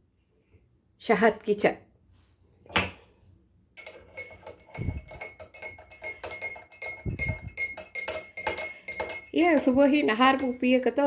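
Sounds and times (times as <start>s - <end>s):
metal spoon clinking in glass: 3.8s - 10.8s.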